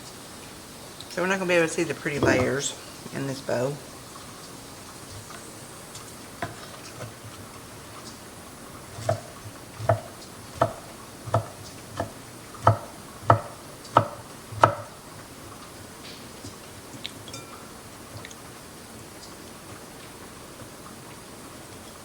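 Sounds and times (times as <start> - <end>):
utensil knocking on pan: 9.9 - 14.9.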